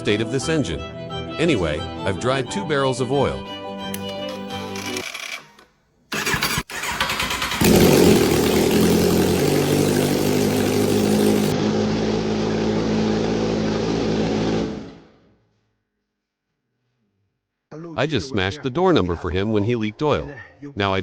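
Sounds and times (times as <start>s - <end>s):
motorcycle electric starter cranking: 4.0s - 11.5s
motorcycle engine idling: 6.2s - 11.5s.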